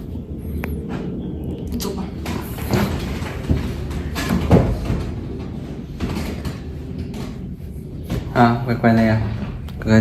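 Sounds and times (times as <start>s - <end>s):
steady low hum: 0.0s - 10.0s
knocks and thuds: 2.2s - 7.4s.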